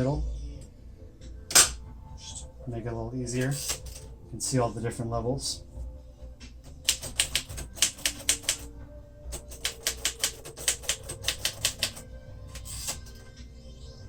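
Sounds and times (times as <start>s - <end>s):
typewriter key strikes: 6.8s - 8.7s, 9.3s - 12.0s.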